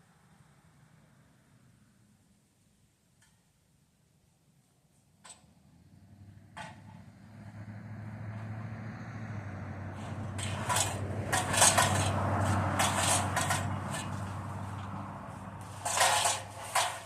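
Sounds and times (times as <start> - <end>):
engine running at low speed: 5.6 - 17.0.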